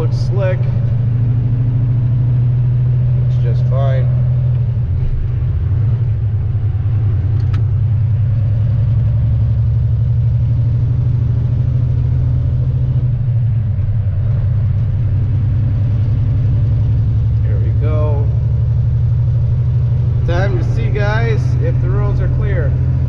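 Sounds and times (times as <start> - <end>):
truck diesel engine droning: 0.0 - 23.0.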